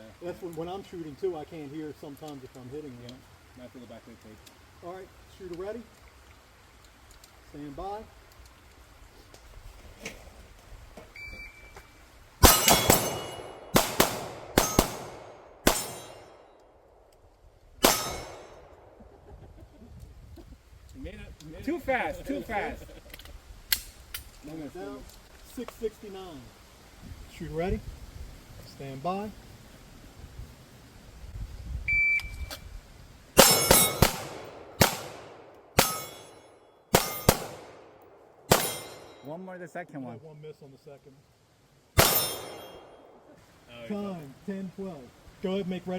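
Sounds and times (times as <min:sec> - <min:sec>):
metallic ringing of steel targets: 0:12.4 - 0:16.5, 0:17.8 - 0:18.7, 0:33.4 - 0:35.0, 0:35.8 - 0:37.6, 0:38.5 - 0:39.6, 0:42.0 - 0:43.2
pistol shots: 0:12.4 - 0:16.5, 0:17.8 - 0:18.8, 0:33.4 - 0:39.2, 0:42.0 - 0:43.1
shot timer beep: 0:31.9 - 0:32.5.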